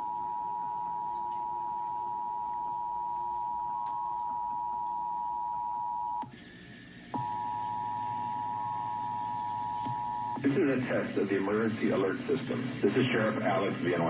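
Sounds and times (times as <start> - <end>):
two-tone attention signal: 7.2 - 10.4.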